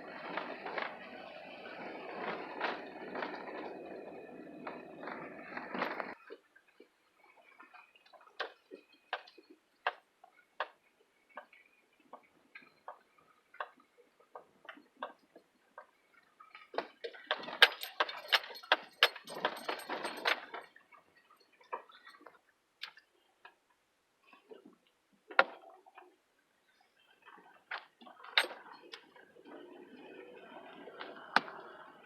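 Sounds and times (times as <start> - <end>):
loose things rattling inside a car: 17.2 - 20.7.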